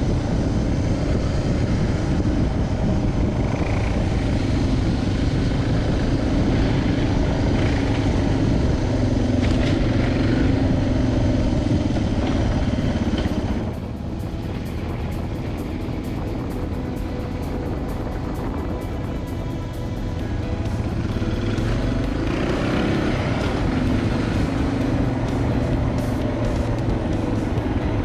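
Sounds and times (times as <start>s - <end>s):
motorcycle engine running: 0.0s - 28.0s
wind and road noise: 0.0s - 28.0s.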